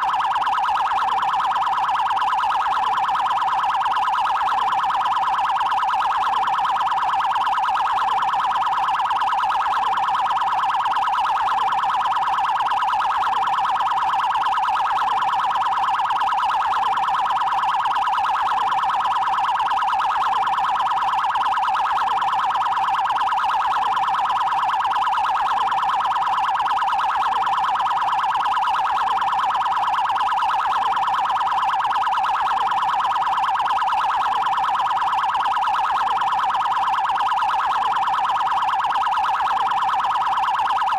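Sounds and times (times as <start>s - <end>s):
electronic siren warbling: 0.0s - 40.9s.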